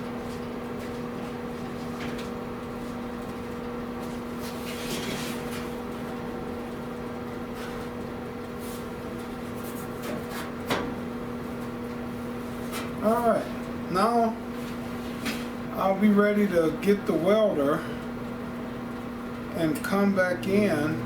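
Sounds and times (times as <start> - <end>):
electrical equipment hum: 0.0 - 21.0
scraping rustle: 4.4 - 5.8.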